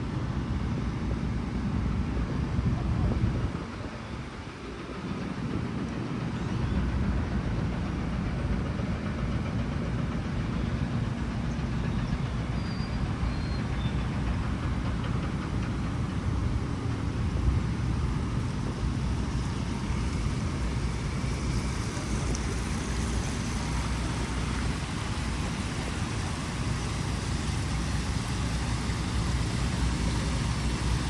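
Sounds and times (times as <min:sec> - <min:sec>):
road traffic rumble: 0:00.0 - 0:31.0.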